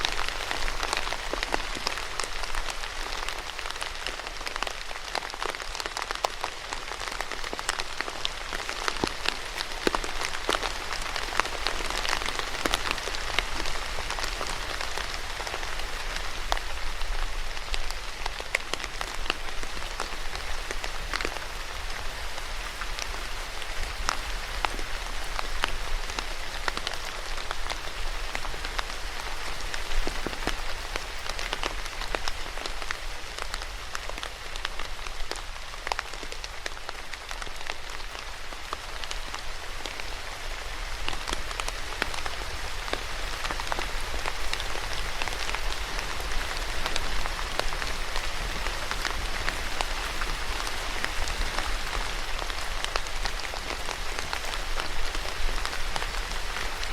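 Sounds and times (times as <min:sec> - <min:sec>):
raindrops ticking: 0:00.0 - 0:40.0
steady rain hiss: 0:00.0 - 0:56.9.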